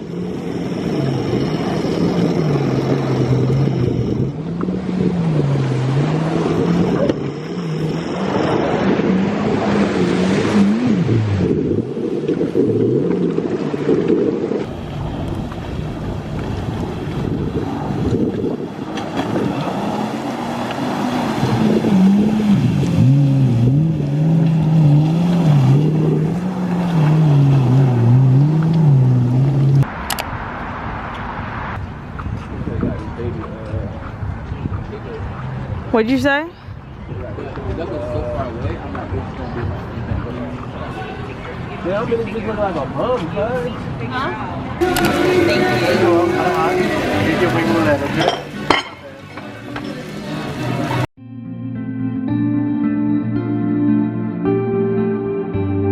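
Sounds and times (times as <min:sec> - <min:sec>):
engine revving: 0:00.0 - 0:13.5, 0:17.5 - 0:30.2
wind and water noise: 0:00.0 - 0:51.1.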